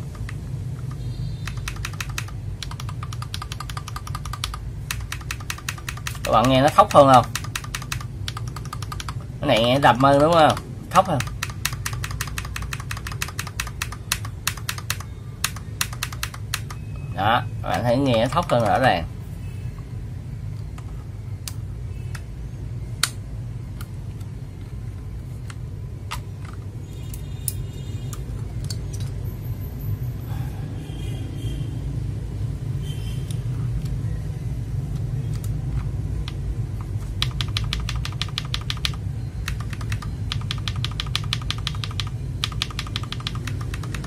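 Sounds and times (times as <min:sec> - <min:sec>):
mechanical keyboard typing: 0:00.0 - 0:16.8, 0:17.7 - 0:18.9, 0:35.0 - 0:44.0.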